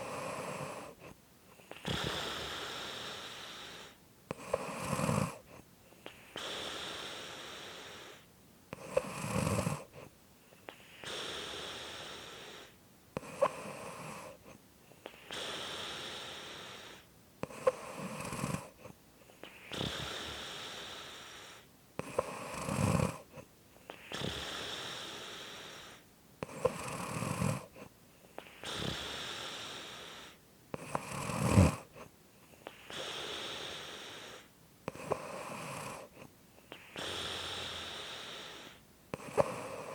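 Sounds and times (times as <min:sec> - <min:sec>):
airy breath: 0:00.7 - 0:04.0, 0:05.4 - 0:08.3, 0:09.8 - 0:12.8, 0:14.2 - 0:17.7, 0:18.7 - 0:22.3, 0:23.2 - 0:26.1, 0:27.6 - 0:30.4, 0:31.8 - 0:39.9
person snoring: 0:01.7 - 0:08.2, 0:08.8 - 0:10.1, 0:10.7 - 0:39.9.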